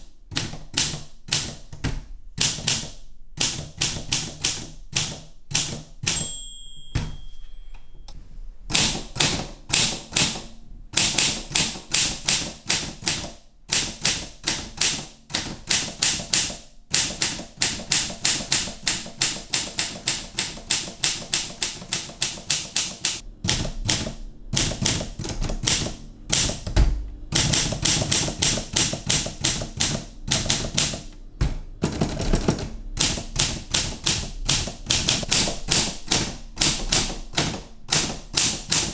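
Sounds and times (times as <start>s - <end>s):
typewriter bell ring: 5.6s - 8.2s
typewriter key clicks: 8.7s - 38.9s
heavy thump: 26.7s - 27.3s, 31.4s - 31.8s.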